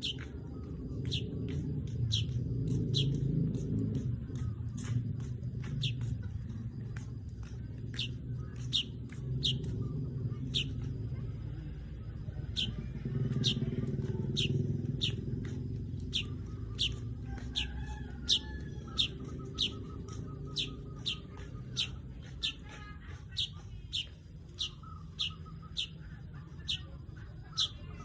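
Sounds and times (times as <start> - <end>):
low rumble: 0.0 - 22.6
bird chip calls: 7.4 - 11.3, 12.3 - 28.0.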